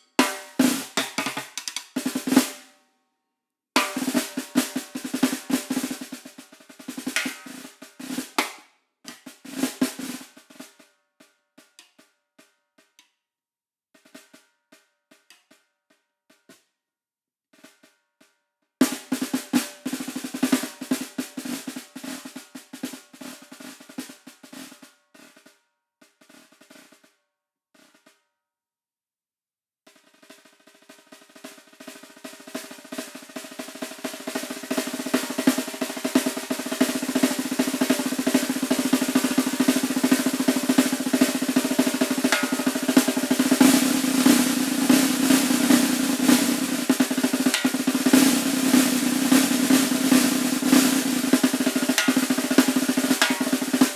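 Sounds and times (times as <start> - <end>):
snare drum roll: 0.0 - 2.6, 3.8 - 10.8, 18.8 - 25.5, 29.9 - 53.9
snare drum strokes and taps: 0.0 - 2.6, 3.8 - 10.9, 18.8 - 25.6, 30.0 - 53.9.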